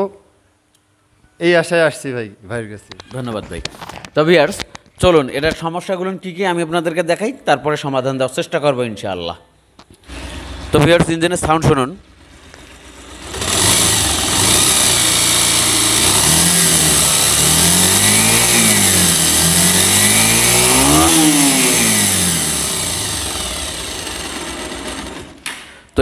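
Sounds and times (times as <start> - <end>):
motorcycle engine revving: 10.0 - 10.8, 12.0 - 25.4.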